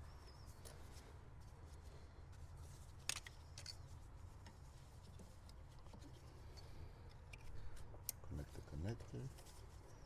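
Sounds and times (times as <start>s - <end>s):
clicks of plastic parts handled: 2.9s - 3.8s.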